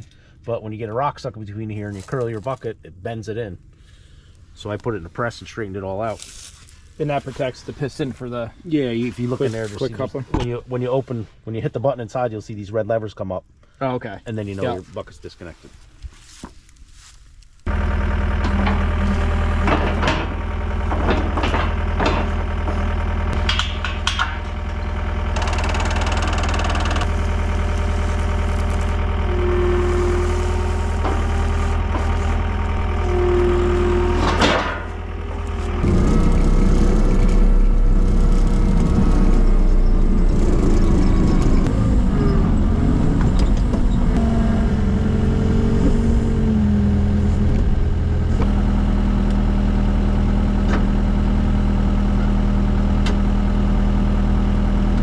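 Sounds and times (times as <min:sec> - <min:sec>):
diesel engine idling: 0:17.6 - 0:55.0
engine revving with whine: 0:17.7 - 0:23.6, 0:24.3 - 0:55.0.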